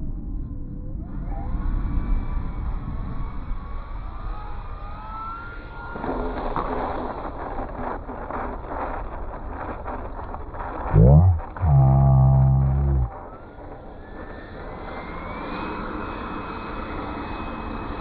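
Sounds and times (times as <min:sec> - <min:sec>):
model jet whine: 0:01.1 - 0:06.5, 0:13.3 - 0:18.0
rough crackling noise: 0:06.8 - 0:13.2.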